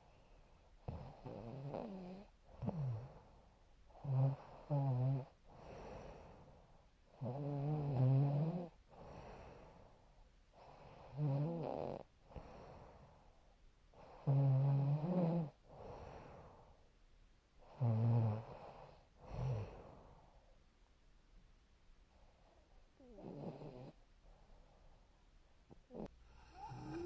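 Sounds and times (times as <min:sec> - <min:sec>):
woman snoring: 0:00.9 - 0:03.3, 0:04.0 - 0:06.3, 0:07.2 - 0:09.6, 0:10.6 - 0:12.6, 0:14.0 - 0:16.3, 0:17.7 - 0:19.8, 0:23.0 - 0:24.0, 0:25.8 - 0:27.0.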